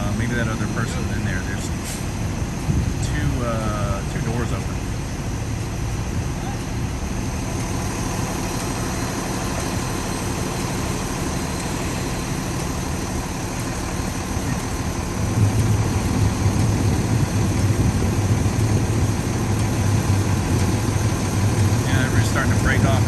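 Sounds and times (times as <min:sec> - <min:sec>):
vehicle engine idling: 0:00.0 - 0:23.0.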